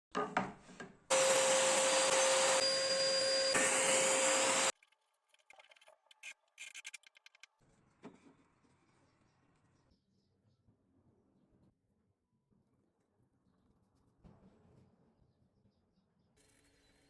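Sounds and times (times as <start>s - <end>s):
power tool whining: 1.1s - 4.7s.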